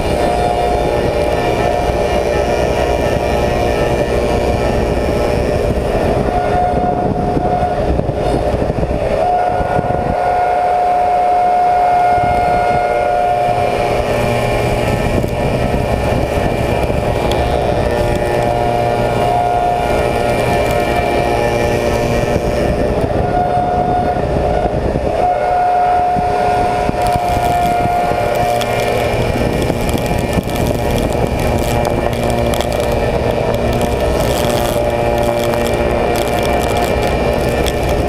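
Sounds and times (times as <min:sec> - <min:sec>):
milling machine cutter drone: 0:00.0 - 0:09.3, 0:11.4 - 0:38.0.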